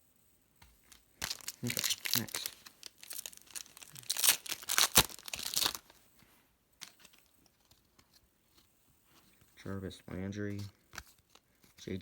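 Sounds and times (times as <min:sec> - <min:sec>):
wrapper tearing and crinkling: 0:00.9 - 0:06.0.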